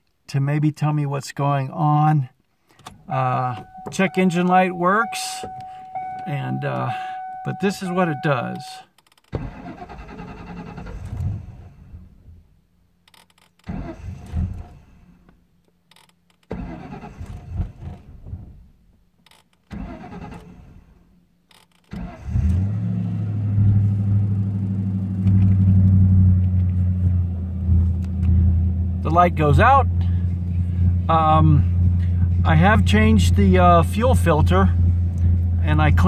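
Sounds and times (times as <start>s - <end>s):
car engine failing to start: 2.7s - 12.3s, 13.1s - 15.3s, 15.9s - 26.4s
car engine idling: 2.9s - 8.8s, 22.8s - 36.0s.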